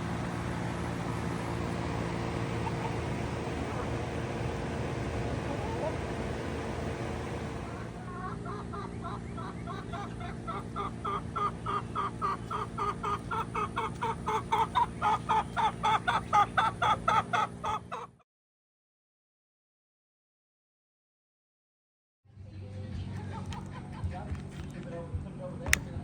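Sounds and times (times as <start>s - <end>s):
low hum: 0.0s - 15.6s
hens clucking: 1.5s - 18.2s.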